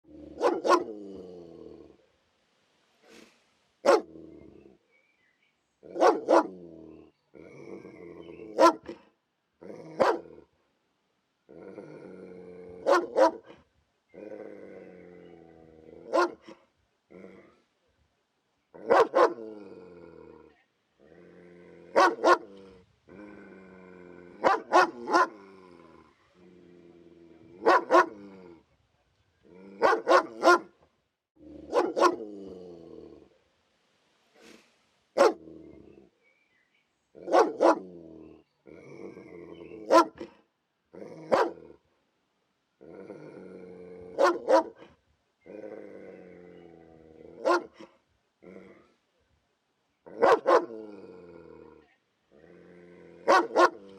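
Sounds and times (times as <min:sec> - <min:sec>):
dog growling: 0:00.0 - 0:02.0, 0:06.0 - 0:08.7, 0:09.6 - 0:10.5, 0:11.5 - 0:13.4, 0:14.1 - 0:16.3, 0:17.1 - 0:17.6, 0:18.8 - 0:28.6, 0:31.4 - 0:33.4, 0:37.2 - 0:40.3, 0:40.9 - 0:41.8, 0:42.8 - 0:44.7, 0:45.4 - 0:47.8, 0:48.4 - 0:49.0, 0:50.1 - 0:53.9
dog barking aggressively: 0:00.3 - 0:01.0, 0:03.8 - 0:04.1, 0:05.9 - 0:06.6, 0:08.6 - 0:09.0, 0:10.0 - 0:10.3, 0:12.8 - 0:13.5, 0:16.1 - 0:16.5, 0:18.8 - 0:19.4, 0:21.9 - 0:22.5, 0:24.4 - 0:25.4, 0:27.6 - 0:28.2, 0:29.8 - 0:30.7, 0:31.6 - 0:32.3, 0:35.2 - 0:35.4, 0:37.3 - 0:37.9, 0:39.9 - 0:40.3, 0:41.3 - 0:41.6, 0:44.2 - 0:44.8, 0:47.4 - 0:47.8, 0:50.1 - 0:50.8, 0:53.2 - 0:53.8.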